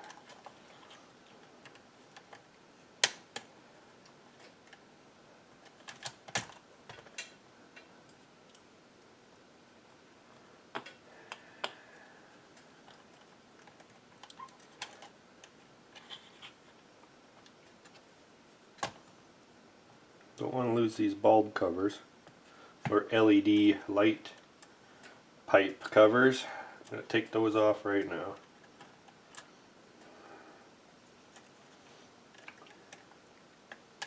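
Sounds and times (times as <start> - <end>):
plastic parts and hand tools clicking: 0.0 - 4.8, 5.6 - 8.6, 12.5 - 16.8.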